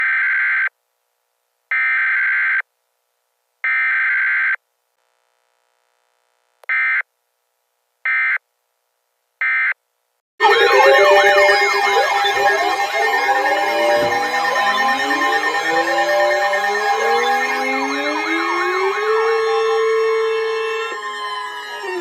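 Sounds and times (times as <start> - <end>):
harsh buzzing data bursts: 10.4 - 22.0.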